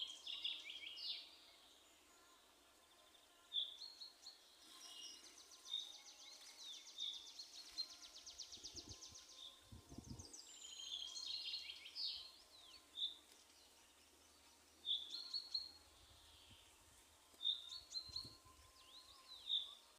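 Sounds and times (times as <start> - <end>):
birds chirping and whistling: 4.6 - 14.1, 14.8 - 16.6, 17.4 - 19.8.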